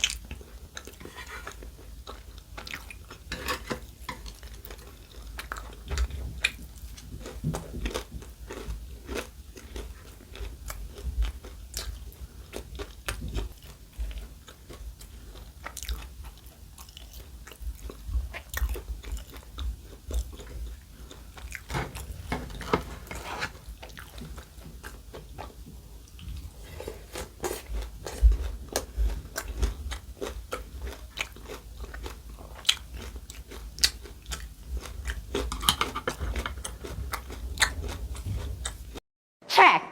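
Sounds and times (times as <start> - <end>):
person chewing crunchy food: 0.0 - 39.0.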